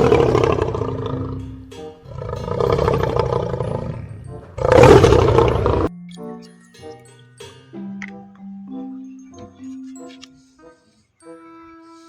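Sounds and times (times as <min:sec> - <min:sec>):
lion roar: 0:00.0 - 0:05.9.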